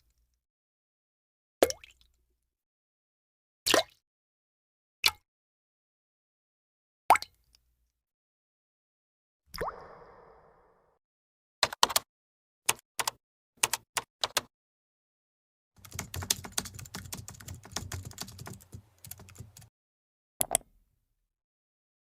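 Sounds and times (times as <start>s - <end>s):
typing on a computer keyboard: 11.6s - 12.1s, 12.7s - 14.5s, 15.8s - 19.7s.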